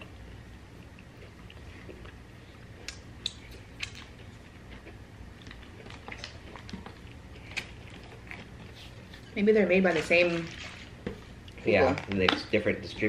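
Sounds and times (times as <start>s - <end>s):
crunchy pizza chewing: 0.0s - 9.4s
low steady hum: 0.0s - 13.0s.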